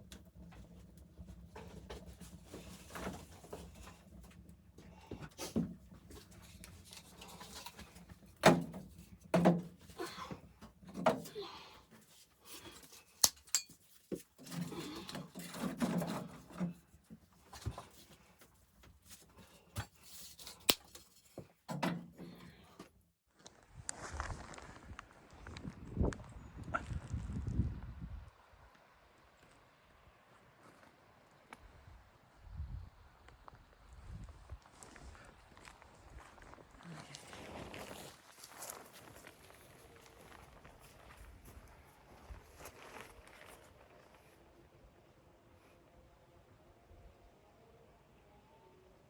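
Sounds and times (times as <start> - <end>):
rustling and scraping: 0.0 - 23.0, 37.1 - 44.3.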